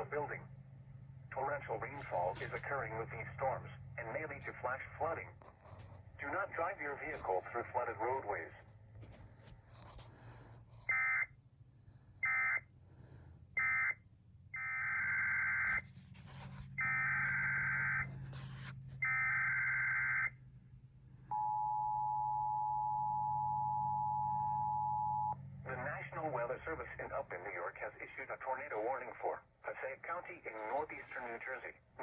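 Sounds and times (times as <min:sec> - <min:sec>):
two-tone attention signal: 0:21.3 - 0:25.4.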